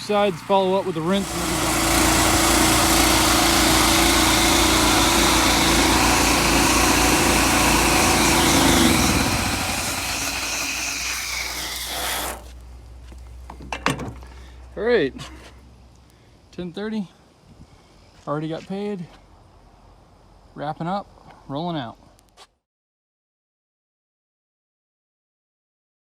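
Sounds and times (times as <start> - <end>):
loud hiss of spray: 0.0 - 12.5
engine-driven pump hum: 0.0 - 15.6.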